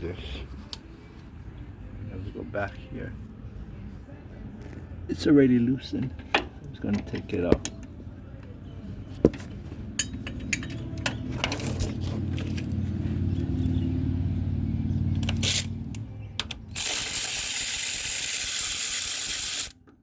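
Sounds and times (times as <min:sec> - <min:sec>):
socket ratchet clicking: 0:15.2 - 0:15.7, 0:16.4 - 0:19.8.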